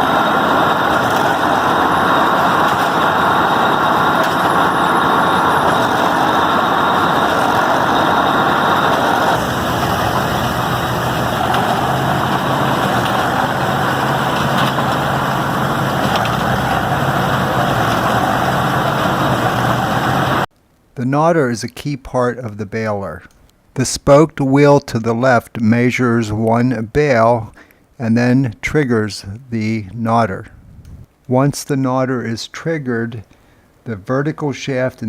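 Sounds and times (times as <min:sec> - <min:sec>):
hay baler engine drone: 0:00.0 - 0:20.5
machine clatter: 0:00.0 - 0:20.5.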